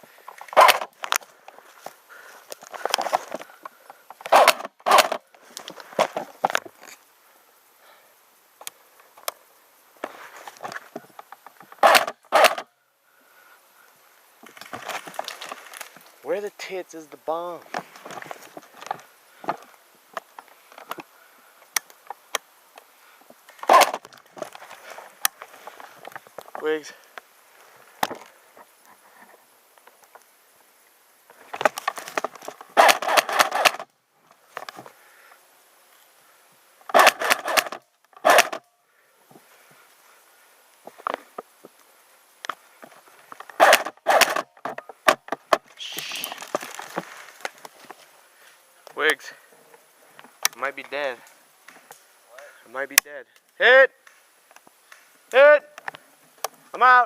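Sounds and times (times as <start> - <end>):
footsteps crunching twigs and leaves: 0.0 - 7.1, 8.6 - 12.7, 14.3 - 30.4, 31.2 - 35.0, 39.2 - 52.6
sharp snaps: 45.1 - 46.5, 51.2 - 56.6
dry leaves crunching and rustling: 45.7 - 48.2.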